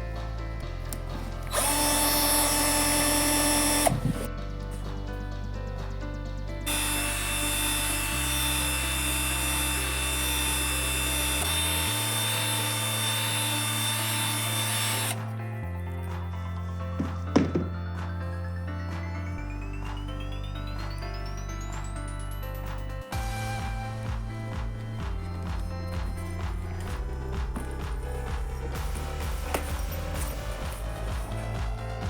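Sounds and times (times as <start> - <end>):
background music with bass: 0.0 - 32.0
power tool grinding: 1.0 - 4.3, 6.7 - 15.2.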